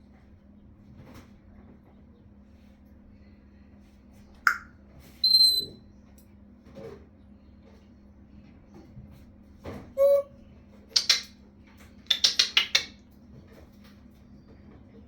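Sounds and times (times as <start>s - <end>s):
parrot sharp clicks: 4.5s - 4.7s, 11.0s - 11.3s, 12.1s - 12.9s
parrot whistle-like note: 5.2s - 5.7s, 10.0s - 10.4s
parrot clipped high sounds: 11.0s - 11.3s, 12.1s - 12.9s.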